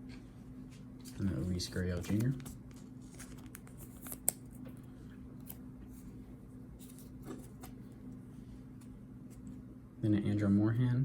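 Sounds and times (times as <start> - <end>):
steady low hum: 0.0 - 11.0
trading cards being handled: 1.0 - 6.2, 6.8 - 8.0.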